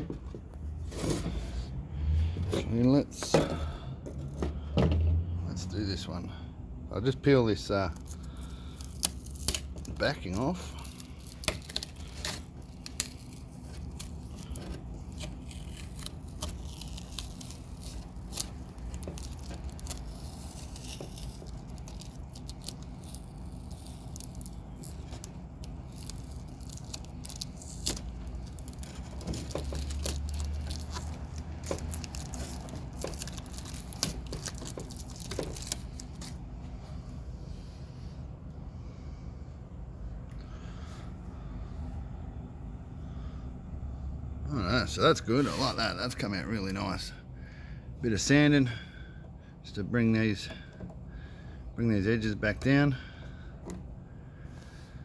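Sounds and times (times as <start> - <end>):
steady low hum: 0.0 - 55.0
plastic film peeling and crinkling: 7.6 - 36.5.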